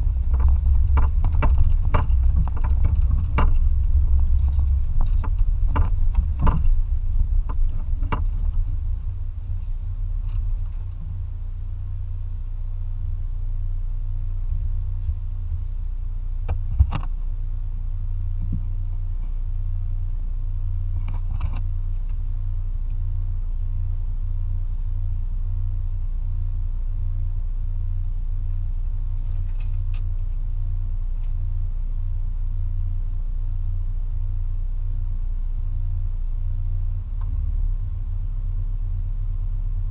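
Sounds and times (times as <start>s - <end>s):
truck engine running: 0.0s - 27.0s.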